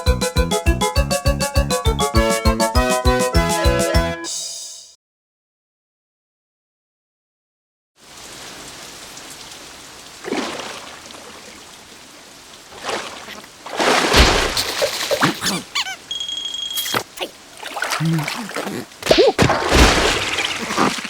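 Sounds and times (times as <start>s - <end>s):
rain-like hiss: 8.0s - 15.2s, 16.1s - 21.0s
squeaky gliding character noises: 15.1s - 17.4s
cartoon sound effects: 15.2s - 17.4s.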